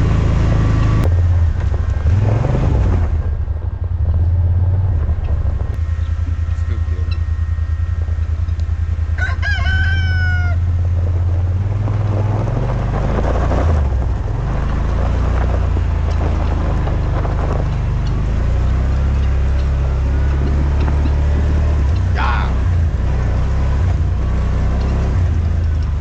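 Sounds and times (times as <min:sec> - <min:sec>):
vehicle engine running at low revs: 0:00.0 - 0:26.0
rooster crowing: 0:09.1 - 0:10.8.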